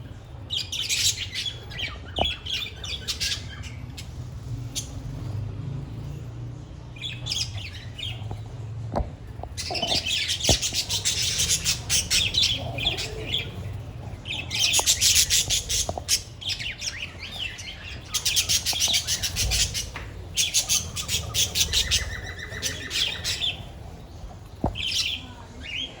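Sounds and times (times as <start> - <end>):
budgerigars chattering and squawking: 0.1 - 5.4, 9.5 - 26.0.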